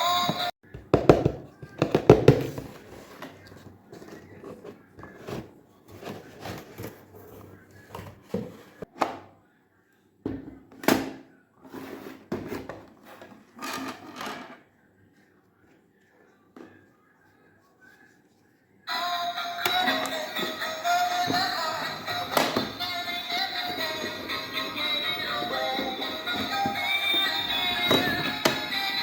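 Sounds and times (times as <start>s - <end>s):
toy and packaging handled: 1.8s - 8.8s.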